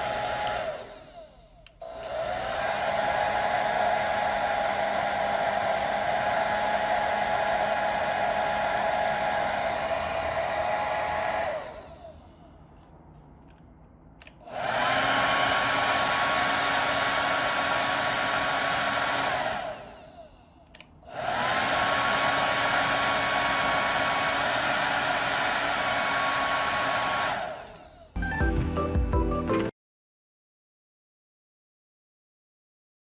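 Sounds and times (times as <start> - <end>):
hair dryer running: 0.0 - 12.8, 14.2 - 28.5
hair dryer switch click: 0.1 - 4.8, 9.2 - 12.0, 14.2 - 15.1, 20.7 - 21.8.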